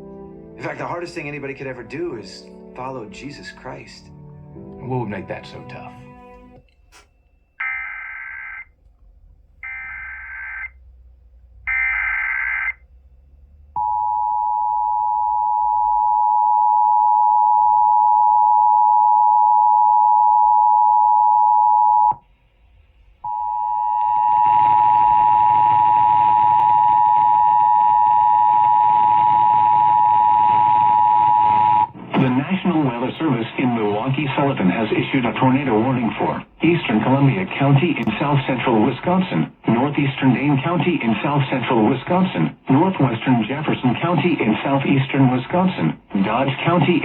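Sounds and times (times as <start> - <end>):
two-tone attention signal: 23.3 - 32.3.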